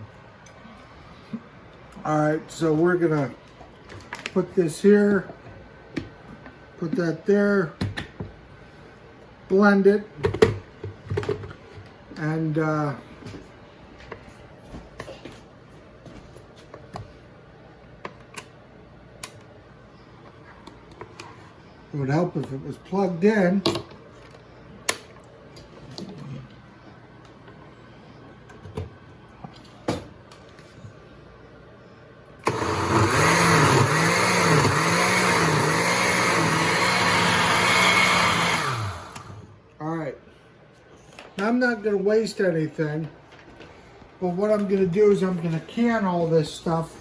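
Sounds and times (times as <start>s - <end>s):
blender motor running: 32.4s - 39.5s.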